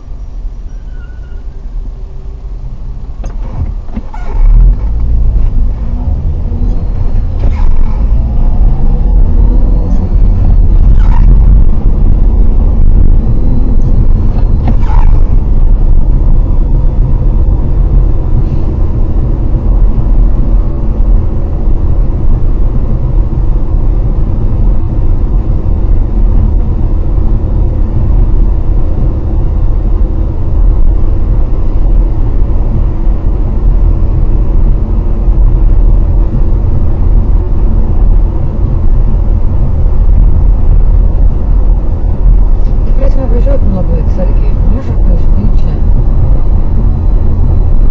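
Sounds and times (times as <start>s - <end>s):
vehicle low rumble: 0.0s - 47.9s.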